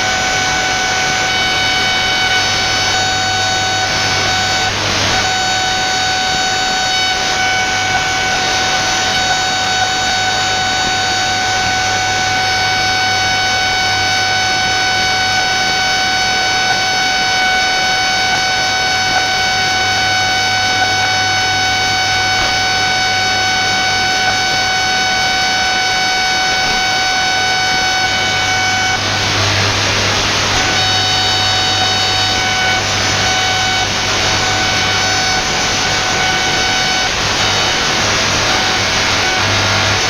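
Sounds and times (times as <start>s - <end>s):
whine of interference tones: 0.0s - 40.0s
radio static hiss: 16.7s - 40.0s.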